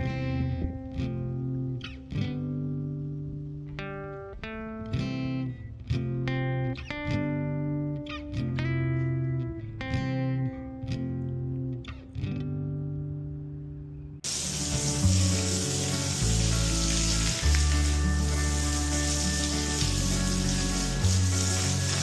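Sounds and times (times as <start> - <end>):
guitar music: 0.0 - 22.0
garden hose spraying water: 14.2 - 22.0.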